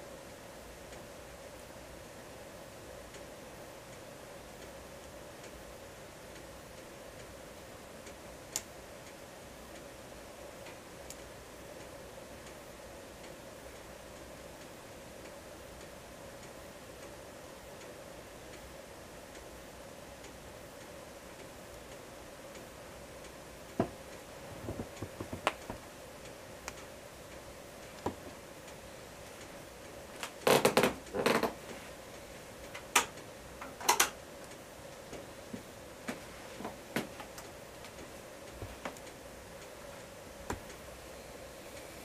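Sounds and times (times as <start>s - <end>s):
faint steady hum: 0.0s - 42.0s
wood fire crackling and popping: 23.7s - 31.7s.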